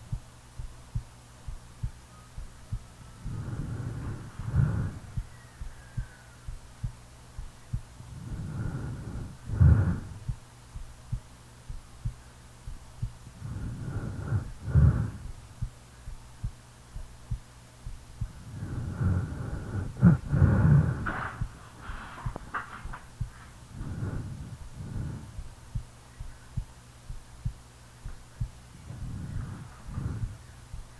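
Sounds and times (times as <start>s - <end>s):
heartbeat thumping: 0.0s - 30.9s
person snoring: 3.2s - 5.2s, 8.1s - 10.2s, 13.4s - 15.3s, 18.4s - 22.3s, 28.8s - 30.4s.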